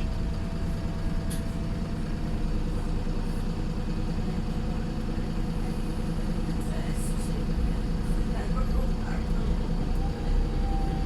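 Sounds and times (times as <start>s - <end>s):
bus diesel engine droning: 0.0s - 11.0s.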